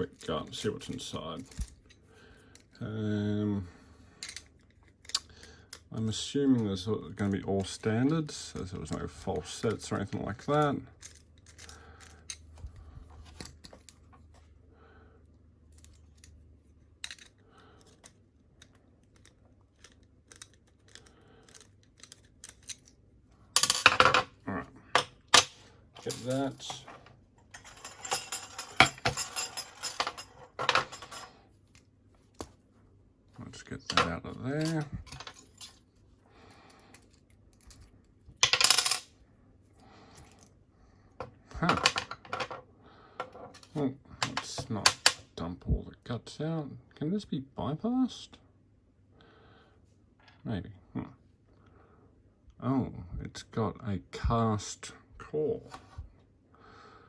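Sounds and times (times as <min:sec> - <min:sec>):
low steady hum: 0:00.0 - 0:57.0
small metallic clicks and scrapes: 0:07.6 - 0:12.6, 0:15.7 - 0:23.0.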